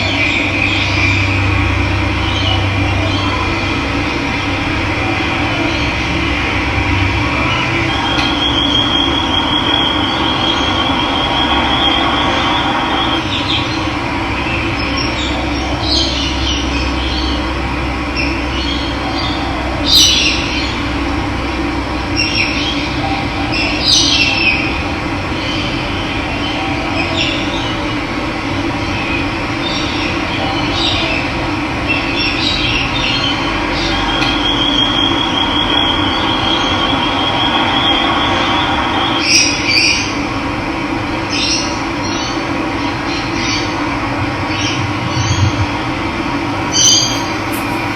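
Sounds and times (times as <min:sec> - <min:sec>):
birds chirping: 0:46.6 - 0:47.9.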